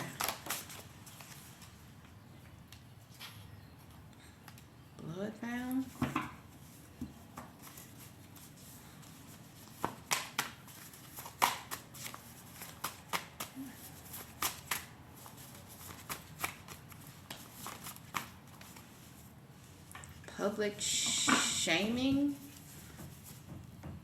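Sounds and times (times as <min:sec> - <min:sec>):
cards being shuffled: 0:00.0 - 0:01.8, 0:06.7 - 0:19.2.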